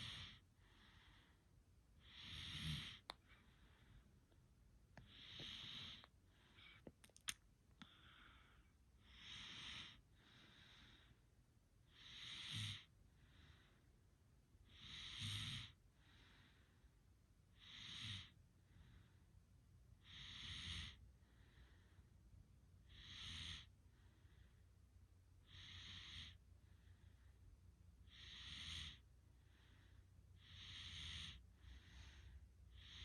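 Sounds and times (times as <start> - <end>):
person snoring: 2.1 - 3.0.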